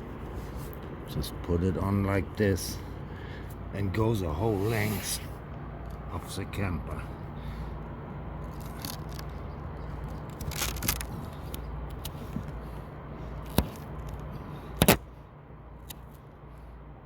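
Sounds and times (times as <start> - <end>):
steady low hum: 0.0 - 17.0
tape crackling and scraping: 8.4 - 12.6.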